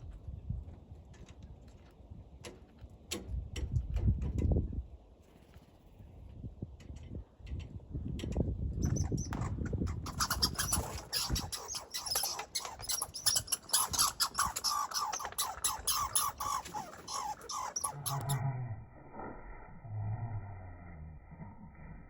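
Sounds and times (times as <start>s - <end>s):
woodpecker calling: 8.8s - 18.4s
low rumble: 17.9s - 22.0s.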